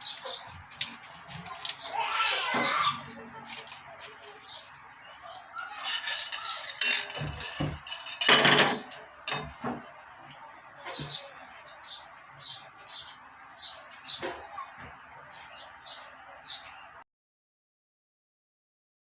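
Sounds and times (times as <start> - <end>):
small bird chirping: 0.0 - 0.6, 10.3 - 17.0
dishes and utensils clattering: 5.6 - 9.9.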